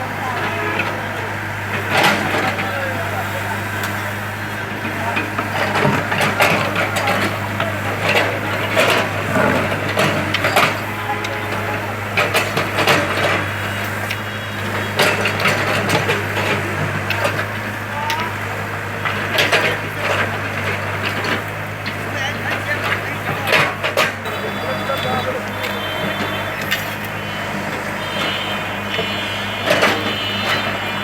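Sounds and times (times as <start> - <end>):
bulldozer diesel engine running: 0.0 - 31.0
machine clanks and knocks: 4.8 - 13.6, 14.6 - 24.3.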